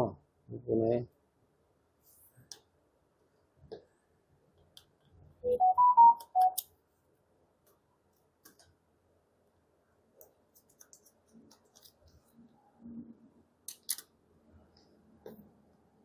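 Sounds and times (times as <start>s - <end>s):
electronic chime: 5.5s - 6.6s
small clicks and taps: 8.4s - 8.8s.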